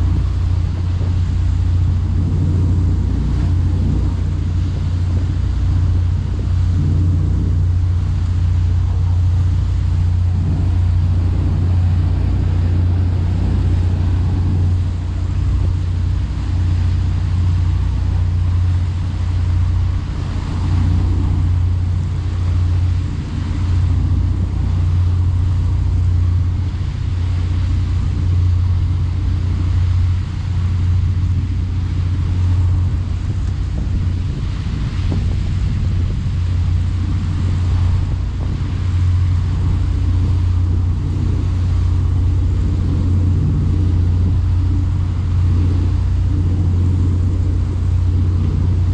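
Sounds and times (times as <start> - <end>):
boat engine droning: 0.0 - 48.9.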